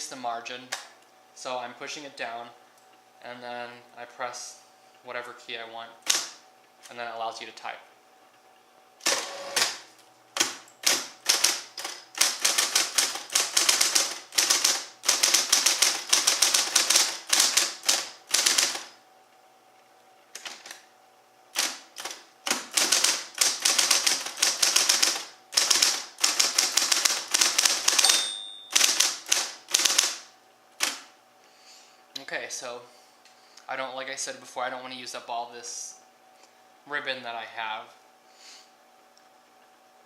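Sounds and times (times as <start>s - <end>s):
typewriter motor hum: 6.0s - 6.4s, 9.0s - 19.0s, 21.5s - 31.1s
typewriter key strikes: 21.6s - 30.1s
typewriter bell ding: 28.0s - 29.0s.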